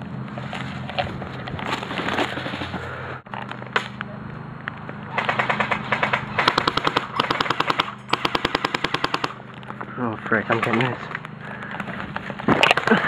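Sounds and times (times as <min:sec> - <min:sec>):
airsoft guns firing: 0:05.1 - 0:09.5.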